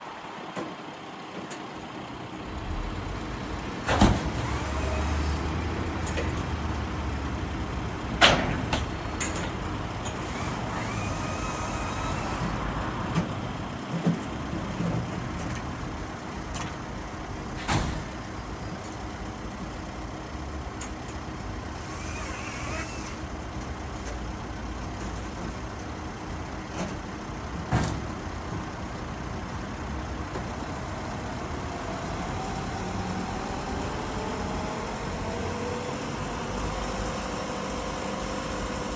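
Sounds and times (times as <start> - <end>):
tractor diesel engine running: 0.0 - 38.9
brief rising and falling whines: 31.3 - 38.9.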